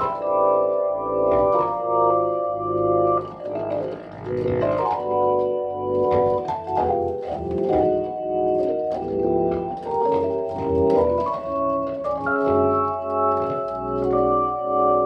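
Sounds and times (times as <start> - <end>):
organ playing sustained chords: 0.0 - 15.0.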